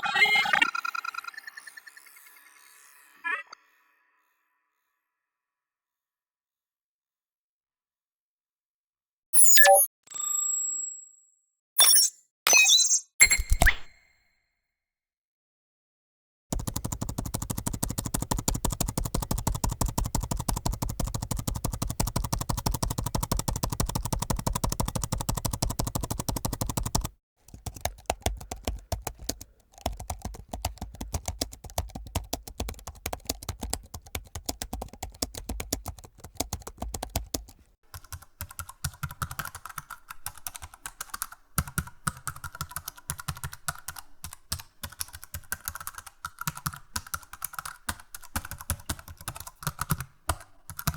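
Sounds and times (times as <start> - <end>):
rapid keyboard typing: 16.5 - 50.9.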